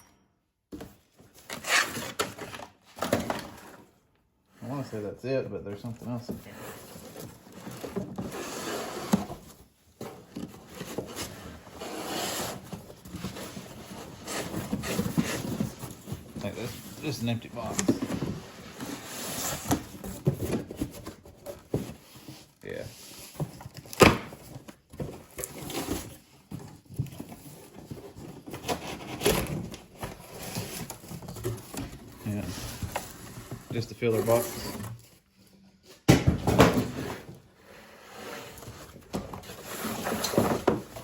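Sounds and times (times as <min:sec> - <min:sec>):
cardboard box rustling: 0:05.9 - 0:35.2, 0:38.4 - 0:41.0.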